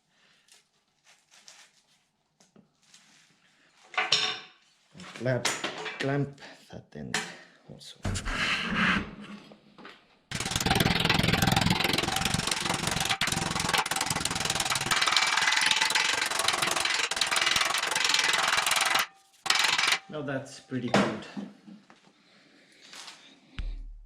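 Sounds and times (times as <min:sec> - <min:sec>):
power tool on sheet metal: 0:10.3 - 0:20.1.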